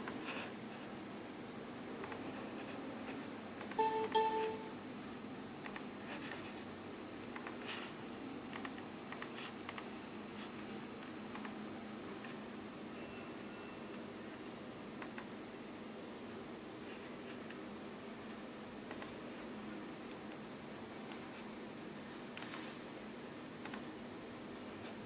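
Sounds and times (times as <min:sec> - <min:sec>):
short pitched tone: 0:03.8 - 0:04.8.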